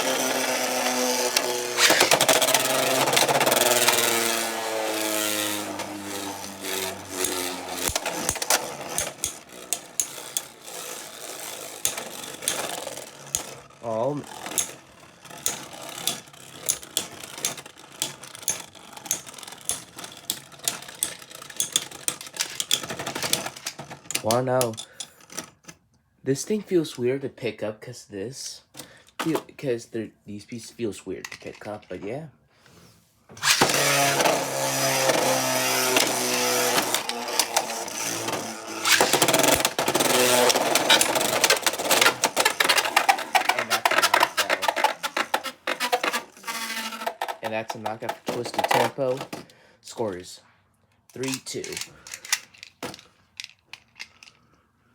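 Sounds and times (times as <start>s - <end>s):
spinning tops clashing: 0.0s - 24.1s, 33.4s - 48.9s.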